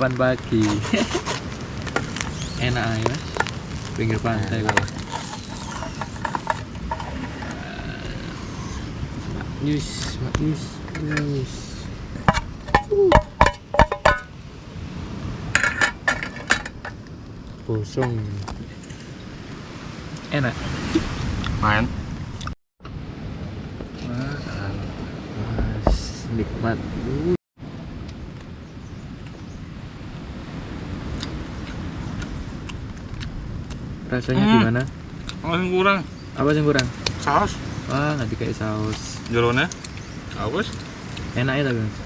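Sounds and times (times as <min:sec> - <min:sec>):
surf washing: 0:00.0 - 0:28.5, 0:29.1 - 0:42.0
wind rumbling on microphone: 0:00.0 - 0:42.0.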